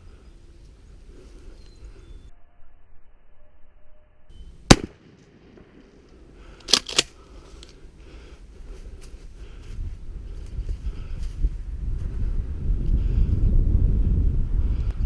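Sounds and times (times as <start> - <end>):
loud gunshot: 4.7 - 5.7
sharp cracks: 4.7 - 7.8.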